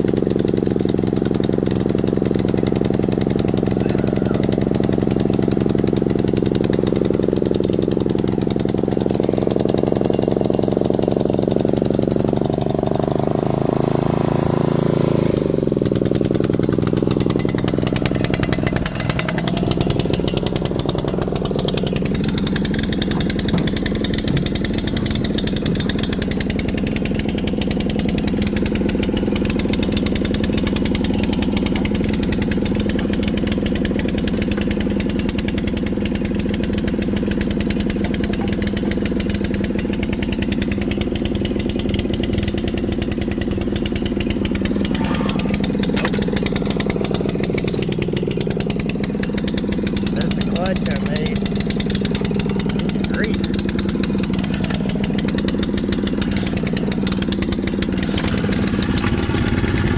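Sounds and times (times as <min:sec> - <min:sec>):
small gasoline engine running: 0:00.0 - 0:59.9.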